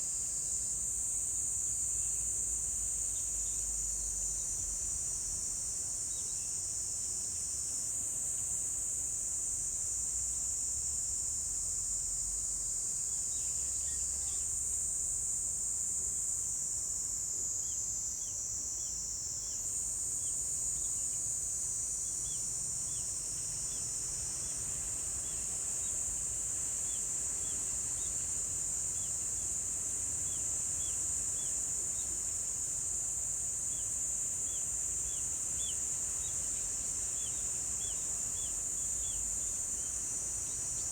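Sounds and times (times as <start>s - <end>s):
insects trilling: 17.6s - 40.9s.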